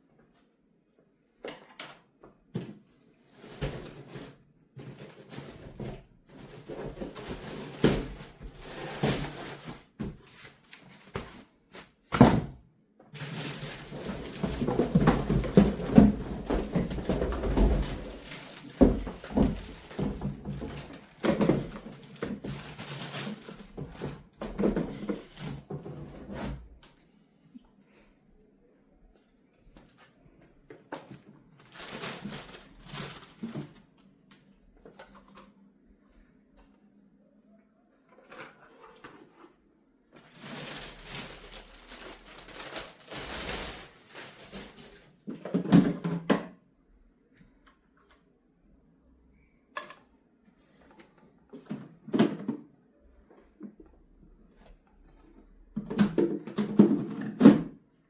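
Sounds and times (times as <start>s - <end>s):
objects knocking and thudding: 1.4s - 11.4s, 12.1s - 26.7s, 40.2s - 46.6s, 51.5s - 52.7s, 55.7s - 57.8s
rustling handling noise: 2.7s - 12.1s, 13.1s - 26.8s, 29.7s - 35.6s, 38.1s - 45.7s.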